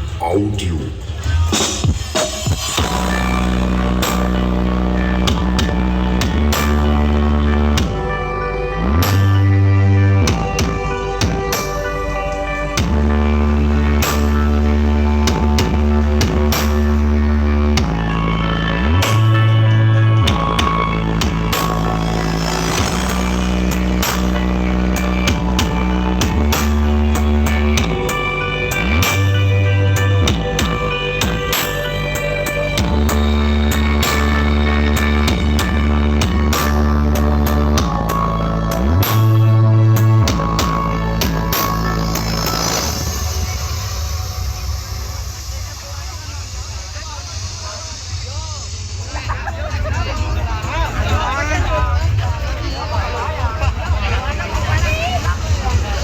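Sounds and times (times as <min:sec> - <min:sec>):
steady drum beat: 0:00.0 - 0:08.2, 0:20.3 - 0:39.0
heavy bass notes: 0:00.0 - 0:56.0
loud electronic dance music: 0:00.0 - 0:56.0.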